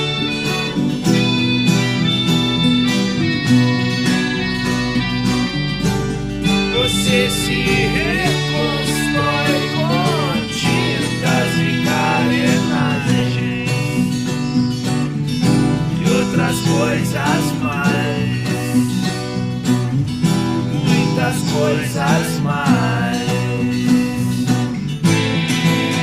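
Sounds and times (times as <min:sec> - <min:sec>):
gliding melody line: 0:00.0 - 0:19.7
viola and acoustic guitar playing: 0:00.0 - 0:26.0.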